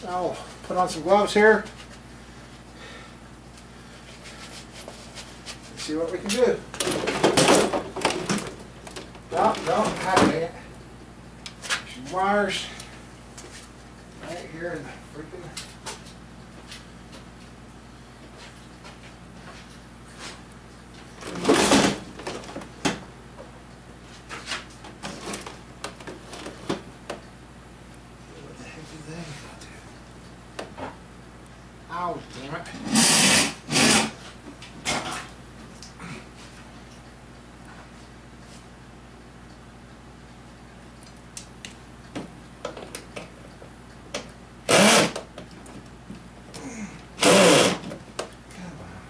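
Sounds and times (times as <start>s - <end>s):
power drill motor spinning: 32.9s - 34.1s, 44.7s - 45.2s, 47.2s - 47.8s.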